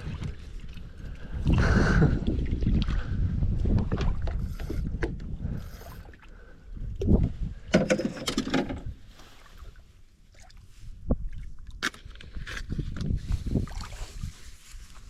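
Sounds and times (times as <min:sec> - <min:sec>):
wind buffeting microphone: 0:00.0 - 0:07.8, 0:12.3 - 0:15.0.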